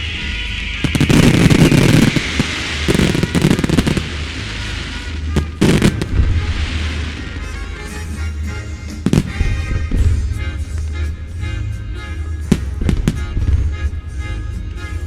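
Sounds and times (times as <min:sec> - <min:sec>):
fireworks bursting and crackling: 0:00.0 - 0:11.3, 0:12.5 - 0:14.0
background music: 0:00.0 - 0:15.0
sharp bangs: 0:00.7 - 0:08.3, 0:08.9 - 0:10.7.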